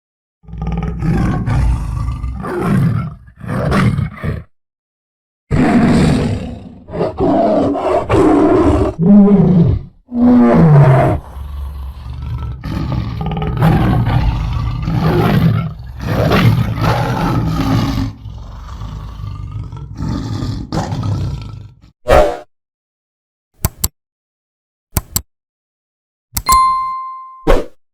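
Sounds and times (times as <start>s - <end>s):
tiger roaring and growling: 0.4s - 4.5s, 5.5s - 21.9s.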